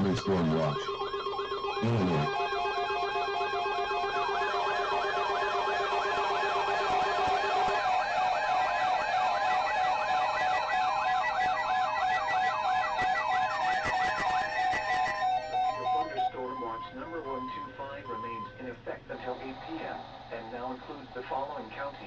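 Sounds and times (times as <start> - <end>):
steady and pulsing alarm tones: 0.0 - 2.4.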